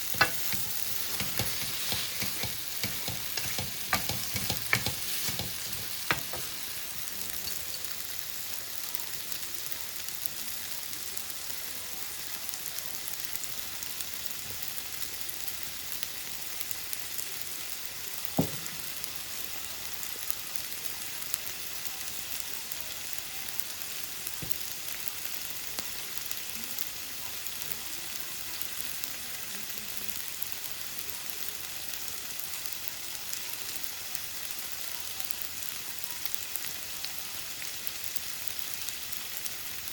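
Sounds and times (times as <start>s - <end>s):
noodles sizzling in a pan: 0.0s - 39.9s.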